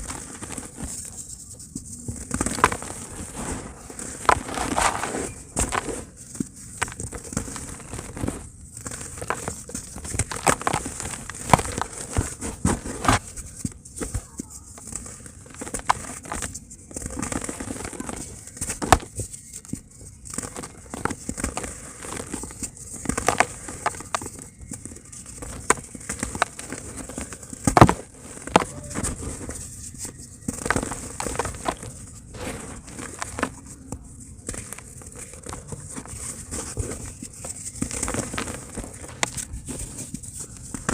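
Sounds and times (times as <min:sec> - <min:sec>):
dry cement crunching: 0:00.0 - 0:40.9.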